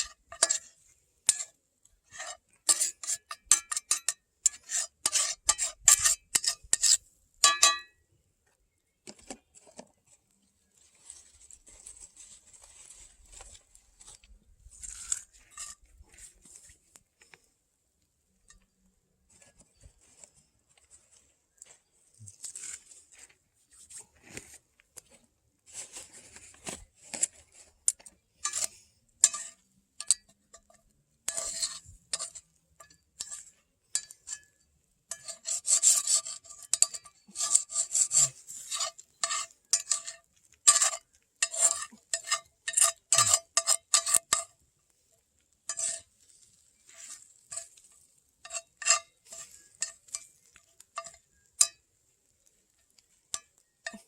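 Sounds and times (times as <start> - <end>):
metal utensil scraping a pan: 0.0 - 8.0, 14.7 - 16.7, 27.0 - 44.6, 45.6 - 54.0.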